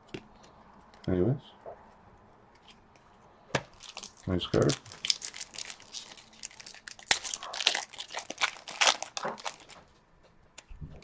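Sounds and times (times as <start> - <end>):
card wrappers crinkling: 3.7 - 9.8.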